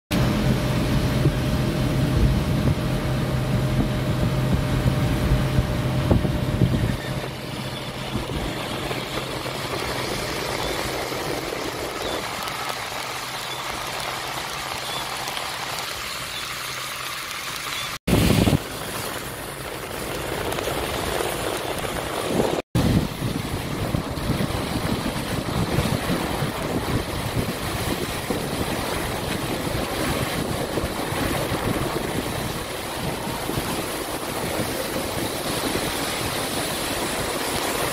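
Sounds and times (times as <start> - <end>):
vehicle engine running: 0.1 - 16.4.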